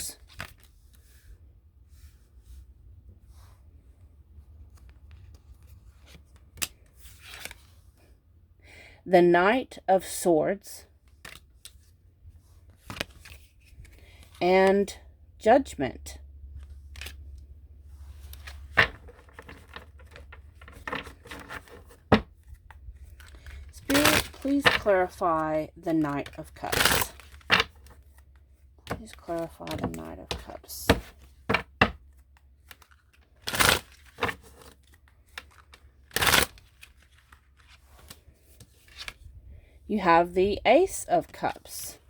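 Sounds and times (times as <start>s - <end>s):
cards being shuffled: 11.0s - 11.9s, 12.6s - 14.4s, 16.5s - 17.4s, 18.0s - 39.3s.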